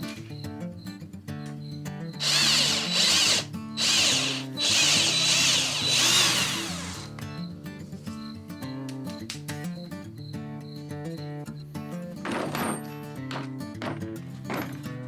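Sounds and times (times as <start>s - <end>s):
power drill running: 2.2s - 7.1s.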